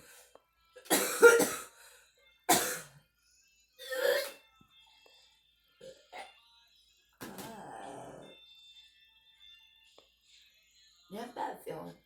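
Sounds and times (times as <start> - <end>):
girl coughing: 0.9 - 1.7, 2.5 - 2.9.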